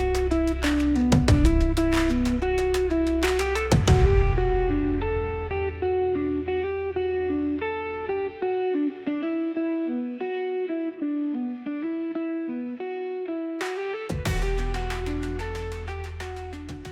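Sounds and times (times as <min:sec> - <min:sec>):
picked guitar melody: 0:00.0 - 0:16.9
sharp hit: 0:01.1 - 0:05.9, 0:14.3 - 0:16.9
low bass note: 0:03.8 - 0:05.9, 0:14.3 - 0:16.8.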